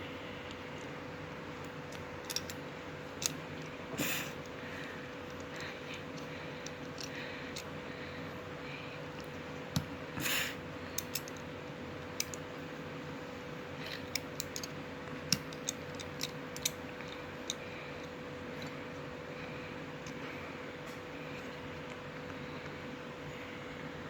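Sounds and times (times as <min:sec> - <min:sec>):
steady electrical hum: 0:00.0 - 0:24.0.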